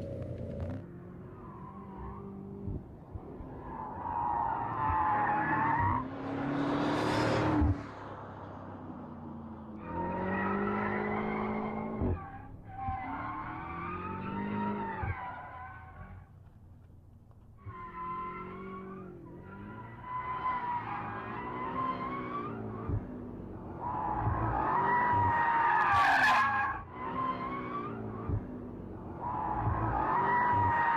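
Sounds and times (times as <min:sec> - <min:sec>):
car engine driven hard: 0:00.0 - 0:30.9.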